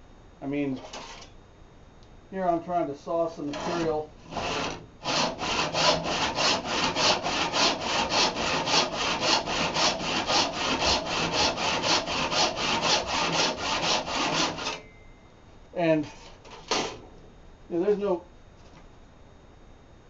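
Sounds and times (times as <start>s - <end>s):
hand saw cutting board: 3.5s - 14.8s.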